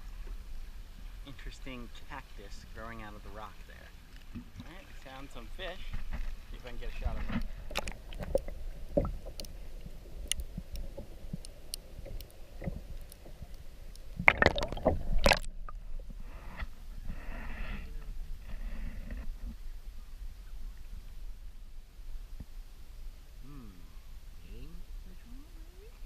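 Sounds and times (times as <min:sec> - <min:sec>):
water sloshing and splashing: 0:00.0 - 0:16.7.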